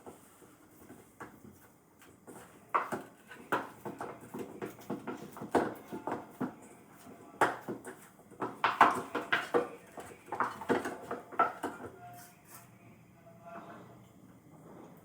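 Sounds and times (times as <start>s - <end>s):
objects knocking and clattering: 0.0s - 12.0s.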